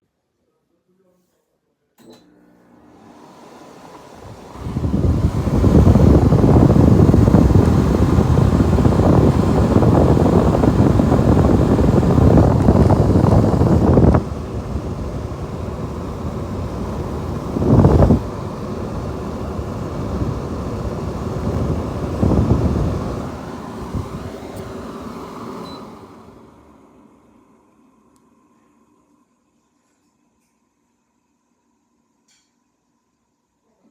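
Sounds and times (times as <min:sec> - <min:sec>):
air conditioner fan rushing: 0:02.0 - 0:28.9.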